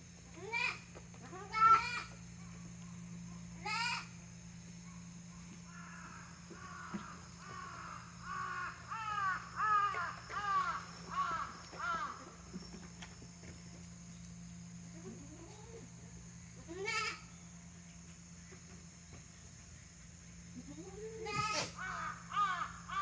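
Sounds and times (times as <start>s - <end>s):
crow cawing: 5.7s - 12.4s, 21.7s - 23.0s.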